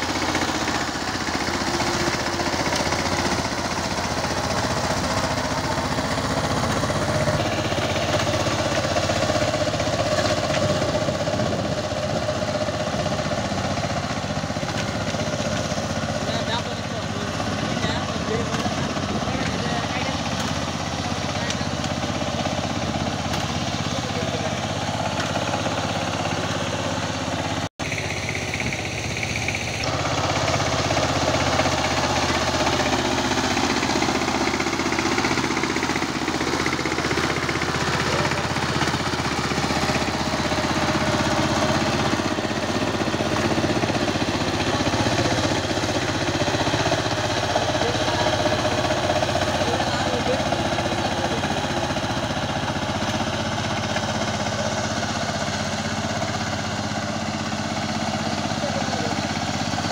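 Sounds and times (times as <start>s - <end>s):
diesel engine chugging: 0.0s - 59.9s.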